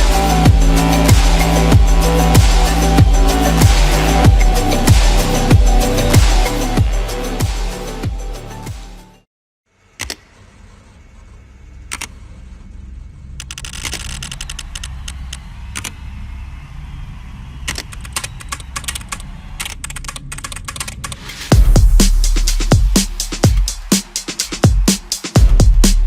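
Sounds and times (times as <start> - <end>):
electronic music with heavy bass: 0.0 - 9.2, 21.2 - 26.0
mechanical keyboard typing: 17.7 - 21.3.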